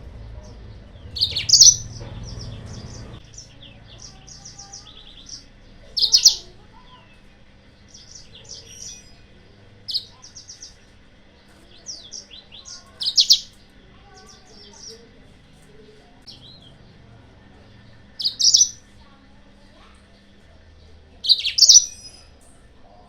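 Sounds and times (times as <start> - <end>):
canary singing in trills: 0.0 - 23.0
loud bird chirps: 0.4 - 15.1, 16.2 - 17.1, 17.9 - 19.1, 21.2 - 22.4.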